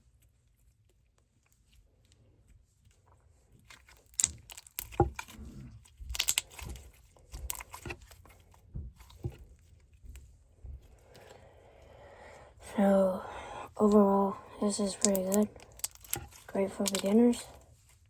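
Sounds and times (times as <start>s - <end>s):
slime popping and crackling: 3.8s - 7.9s, 14.7s - 17.5s.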